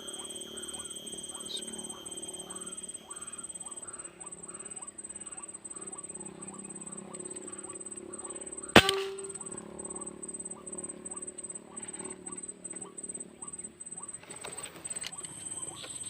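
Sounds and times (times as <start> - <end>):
high pulsing insect drone: 0.0 - 16.0
repeated animal calls: 0.0 - 16.0
air rifle shot: 8.8 - 9.4.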